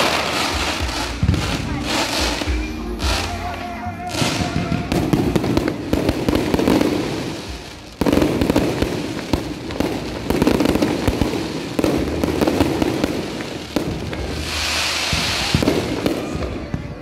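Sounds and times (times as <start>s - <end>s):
hissing crackle: 0.0s - 16.8s
fireworks crackling: 0.0s - 17.0s.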